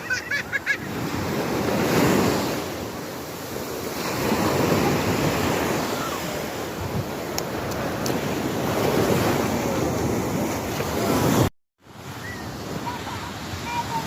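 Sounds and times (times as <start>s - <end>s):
sea waves washing in: 0.0s - 14.0s
wind buffeting microphone: 4.3s - 11.5s.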